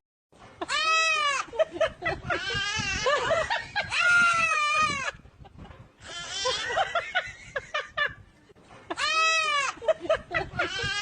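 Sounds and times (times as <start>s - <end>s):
goat bleating: 9.0s - 9.8s.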